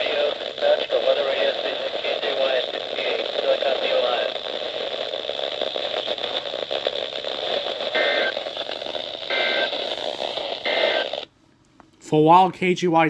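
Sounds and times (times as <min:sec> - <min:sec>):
radio static: 0:00.0 - 0:11.3
warbling data bursts: 0:02.2 - 0:11.3.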